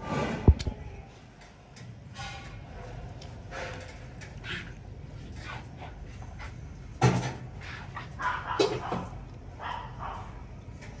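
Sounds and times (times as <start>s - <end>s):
dog barking: 8.2s - 10.4s.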